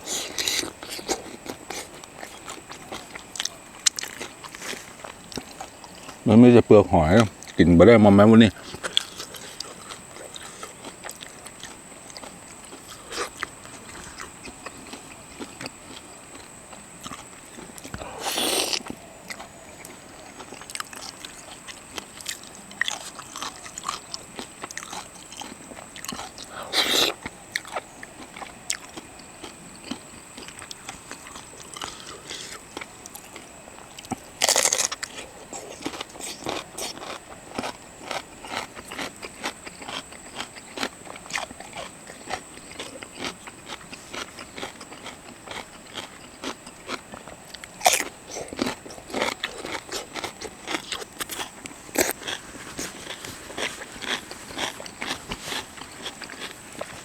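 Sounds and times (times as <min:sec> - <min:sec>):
harsh eating noises: 0:00.0 - 0:57.0
seafood being chewed: 0:00.0 - 0:57.0
mouth smacks: 0:17.8 - 0:19.4, 0:26.1 - 0:27.7.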